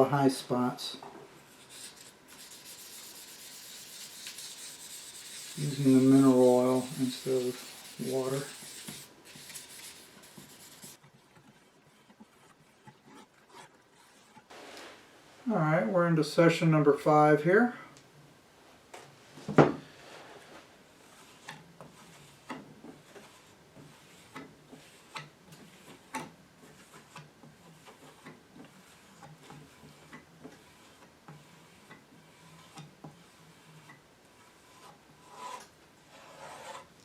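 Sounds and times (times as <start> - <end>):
polishing pad rubbing wood: 1.5 - 11.0
rustle: 13.8 - 15.5.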